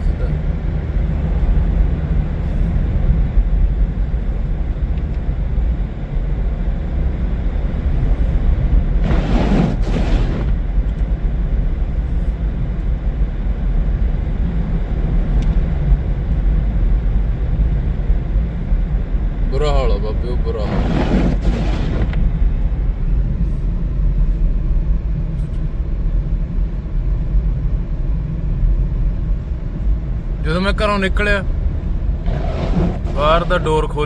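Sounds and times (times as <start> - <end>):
car engine and tyre rumble: 0.0 - 34.0.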